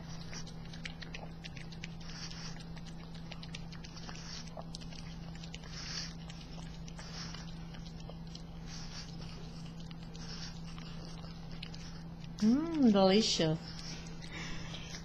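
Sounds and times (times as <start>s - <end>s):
dog licking and smacking: 0.0s - 15.0s
dog breath puffs through nose: 1.7s - 2.8s, 3.8s - 7.8s, 8.4s - 12.2s, 13.6s - 15.0s.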